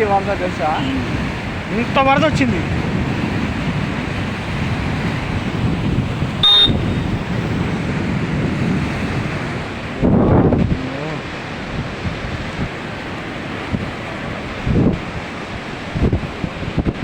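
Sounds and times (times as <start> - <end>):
floodwater rushing: 0.0 - 17.0
wind buffeting microphone: 0.0 - 17.0
brief high-pitched tone: 6.4 - 7.1.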